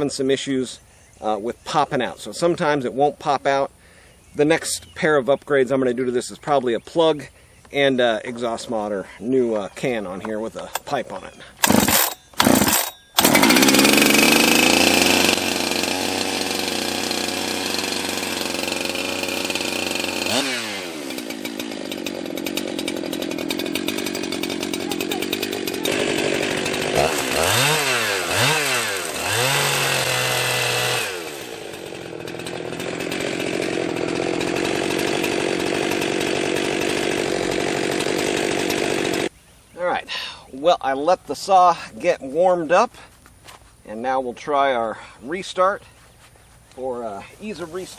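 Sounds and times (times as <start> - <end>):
chainsaw revving and idling: 11.6 - 39.3.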